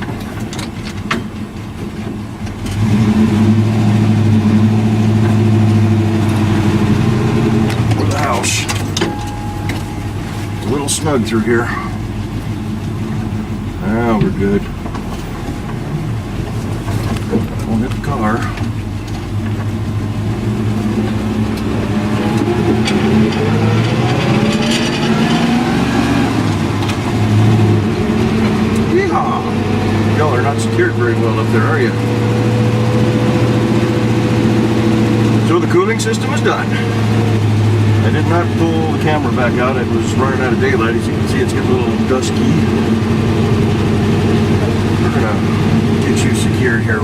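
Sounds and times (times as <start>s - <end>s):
truck engine running: 0.0s - 47.0s.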